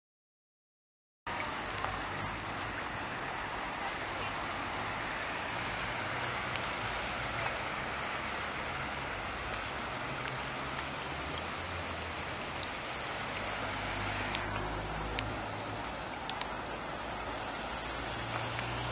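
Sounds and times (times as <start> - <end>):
rushing water: 1.3 - 18.9
light ticks: 14.3 - 16.7.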